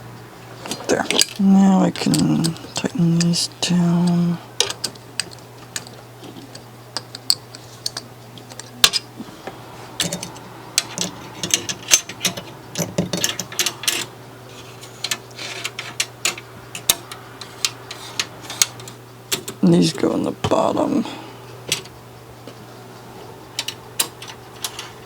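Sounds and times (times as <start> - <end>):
screwdriver clicks and scrapes: 3.9 - 9.1.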